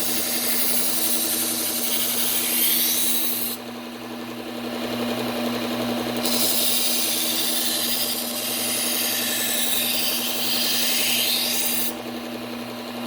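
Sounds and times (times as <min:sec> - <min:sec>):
knife blade grinding hiss: 0:06.2 - 0:12.0.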